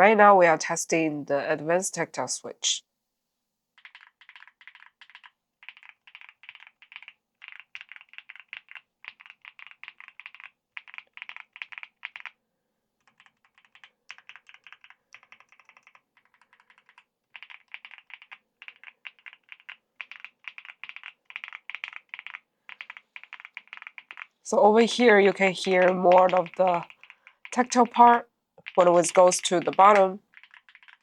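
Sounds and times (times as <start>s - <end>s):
mechanical keyboard typing: 3.8s - 12.4s, 13.0s - 31.0s.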